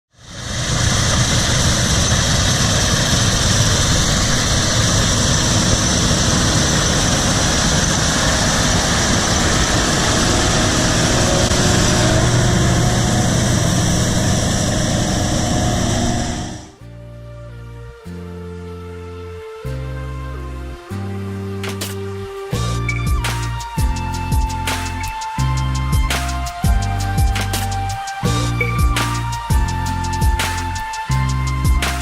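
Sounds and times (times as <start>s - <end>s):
harvest machinery engine hum: 0.2s - 16.8s
high whirring hiss: 0.2s - 32.0s.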